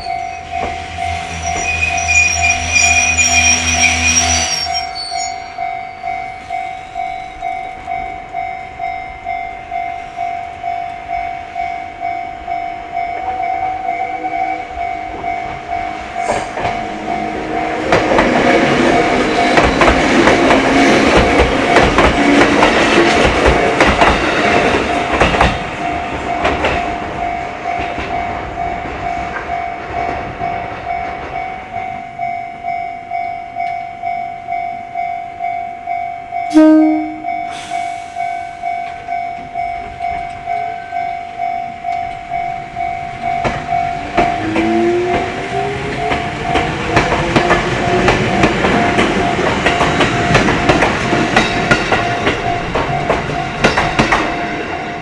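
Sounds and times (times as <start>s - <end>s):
railroad crossing electronic bell: 0.0s - 55.0s
train wheels clattering over rail joints: 16.2s - 31.5s, 41.9s - 55.0s.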